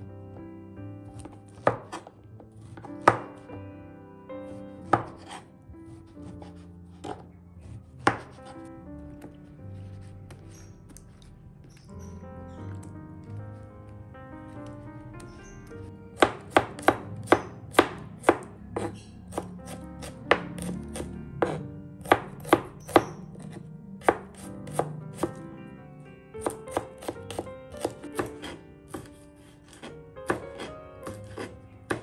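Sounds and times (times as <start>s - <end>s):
knife chopping on cutting board: 1.1s - 3.5s, 4.5s - 8.6s, 16.2s - 25.4s, 26.4s - 32.0s.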